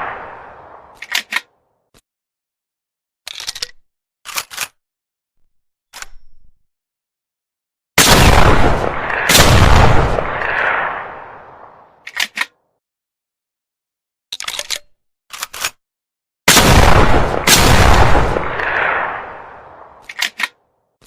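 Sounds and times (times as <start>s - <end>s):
metallic gun action clicks: 0.9s - 1.5s, 3.3s - 4.8s, 12.0s - 12.5s, 14.3s - 15.8s, 20.0s - 20.6s
shotgun blasts with echo: 8.0s - 11.9s, 16.5s - 20.0s.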